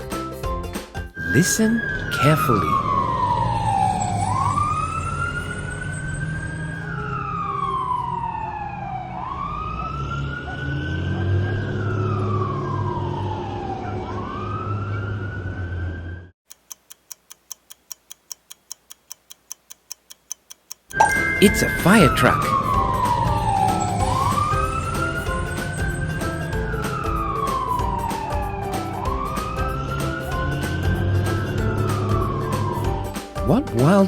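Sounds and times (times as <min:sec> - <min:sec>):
fire truck siren wailing: 0:01.2 - 0:16.3, 0:21.0 - 0:34.0
steady ticking: 0:16.5 - 0:33.4.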